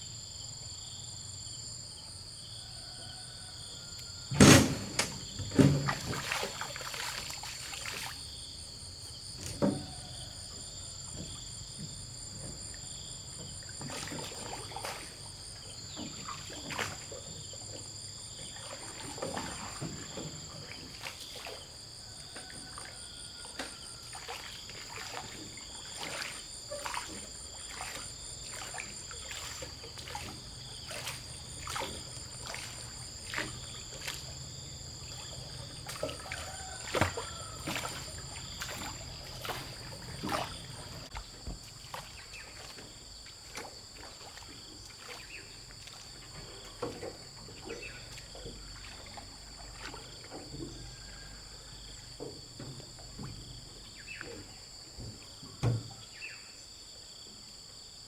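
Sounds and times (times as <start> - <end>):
insects chirping: 0.0 - 58.0
water splashing: 4.5 - 54.6.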